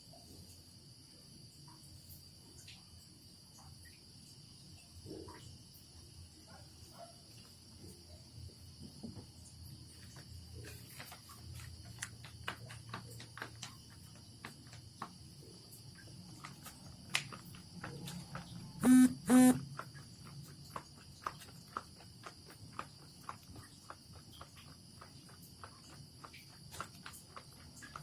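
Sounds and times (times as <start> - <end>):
short loud buzzing beeps: 18.8 - 19.6.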